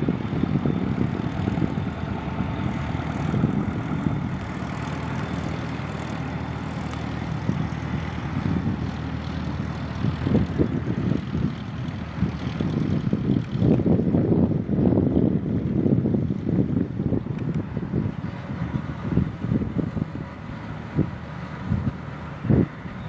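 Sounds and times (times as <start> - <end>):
aircraft engine rumble: 0.0 - 23.0
wind on microphone: 0.0 - 23.0.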